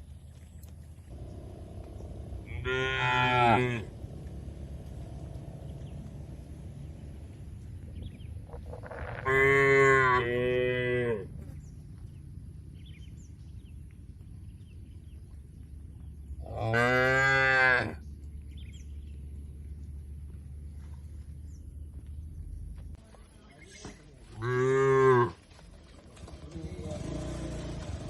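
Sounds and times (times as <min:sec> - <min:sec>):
cattle mooing: 0:01.5 - 0:05.6, 0:08.6 - 0:11.3, 0:16.5 - 0:18.0.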